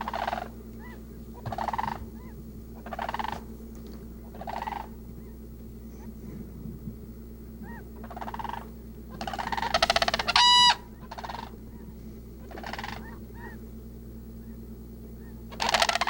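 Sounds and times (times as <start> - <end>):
birds rattling calls: 0.0 - 6.5, 7.6 - 16.0.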